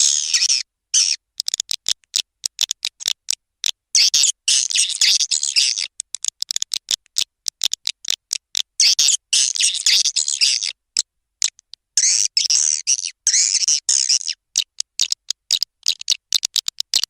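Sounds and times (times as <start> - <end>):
dense bird chattering: 0.0 - 1.2.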